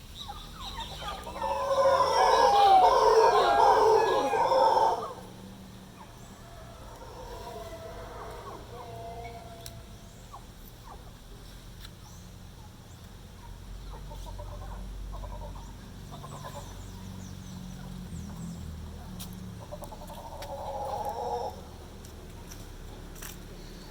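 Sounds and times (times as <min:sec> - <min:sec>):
howler monkeys calling: 0:00.0 - 0:11.2, 0:13.4 - 0:18.3, 0:19.6 - 0:22.0.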